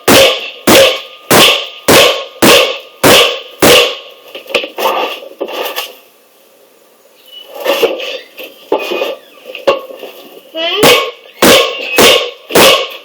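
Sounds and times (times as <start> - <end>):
hammer striking metal hub: 0.1 - 4.0, 10.8 - 13.0.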